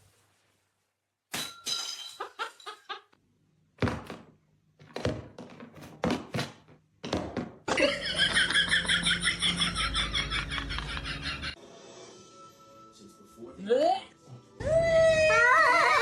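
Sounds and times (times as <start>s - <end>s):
music: 9.0s - 16.0s.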